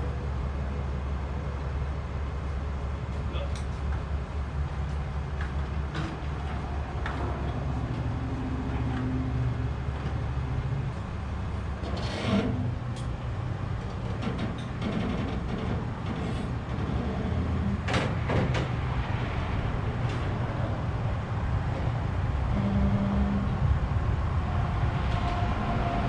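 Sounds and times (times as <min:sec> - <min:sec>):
low machine rumble: 0:00.0 - 0:26.0
knocks and clanks: 0:13.8 - 0:18.8.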